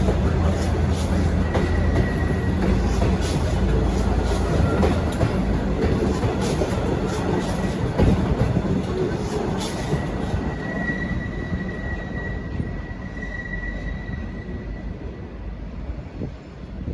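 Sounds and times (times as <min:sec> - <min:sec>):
high wheel squeal: 0:00.0 - 0:05.5, 0:09.3 - 0:15.1
train wheels rumbling on rails: 0:00.0 - 0:16.9.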